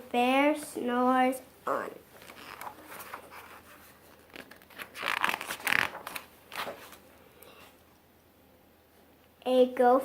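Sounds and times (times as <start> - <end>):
paper page turning: 2.2 - 7.1.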